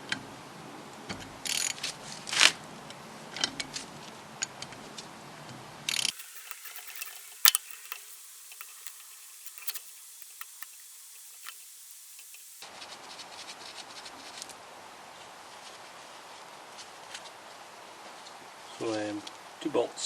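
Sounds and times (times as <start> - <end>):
ratchet clicks: 1.4 - 1.8, 5.9 - 12.6
sharp metal clicks: 5.9 - 12.6.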